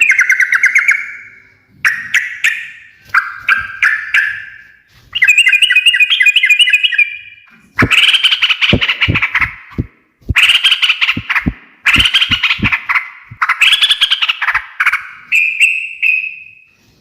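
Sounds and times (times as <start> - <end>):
bulbul chattering: 7.8 - 14.6.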